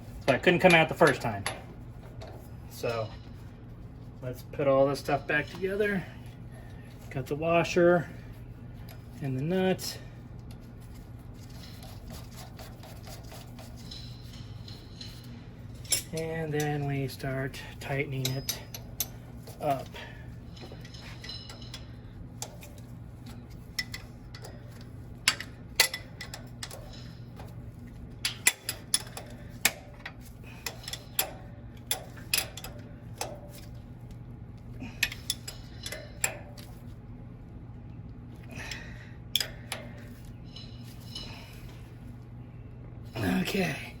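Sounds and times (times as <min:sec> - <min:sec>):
steady low hum: 0:00.0 - 0:44.0
wrench clicking on nut: 0:23.8 - 0:27.5, 0:28.2 - 0:33.7.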